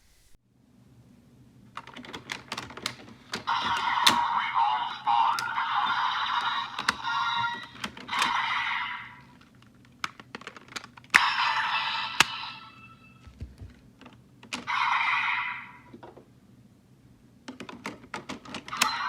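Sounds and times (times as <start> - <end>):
plastic toy clicks: 1.8 - 4.3, 6.8 - 8.4
electronic sound from toy speaker: 3.4 - 9.2, 11.2 - 13.2, 14.6 - 15.9, 18.7 - 19.0.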